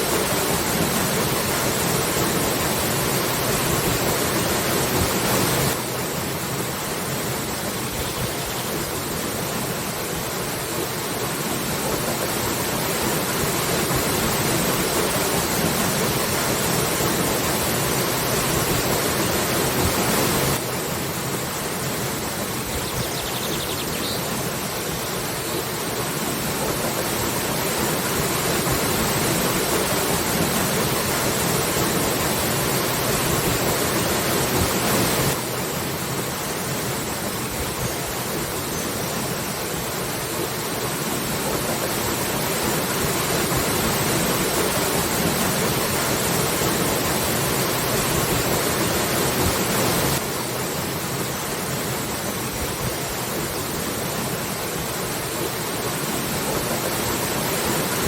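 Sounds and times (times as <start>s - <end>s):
waterfall rushing: 0.0s - 58.0s.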